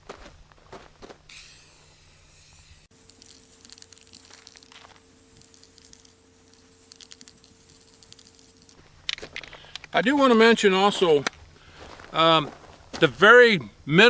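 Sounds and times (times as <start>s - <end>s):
aerosol spray can hissing: 1.3s - 8.8s.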